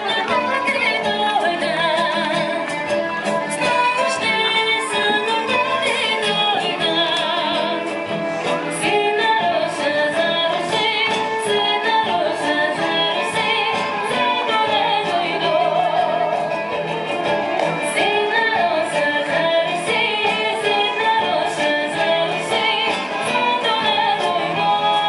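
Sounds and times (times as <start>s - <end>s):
woman singing with vibrato: 0.0s - 16.8s, 17.8s - 25.0s
instrumental accompaniment: 0.0s - 25.0s.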